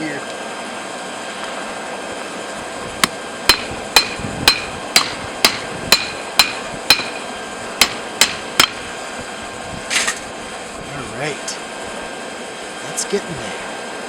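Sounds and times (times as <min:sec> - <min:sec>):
hammer striking hot metal: 0:03.0 - 0:08.9.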